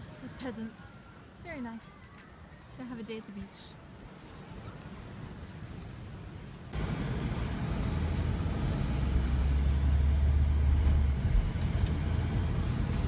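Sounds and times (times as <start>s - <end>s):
road noise: 0.0s - 13.0s
vehicle engine driving past: 6.8s - 13.0s.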